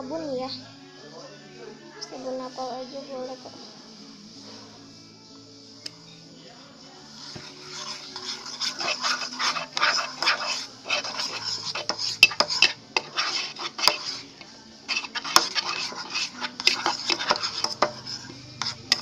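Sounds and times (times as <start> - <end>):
stick scraping slime in container: 7.3 - 14.3, 14.9 - 19.0.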